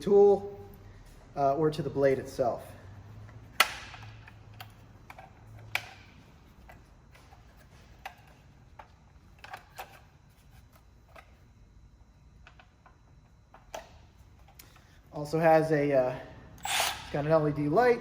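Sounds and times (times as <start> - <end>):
bandsaw handling clicks and knocks: 3.3 - 4.8.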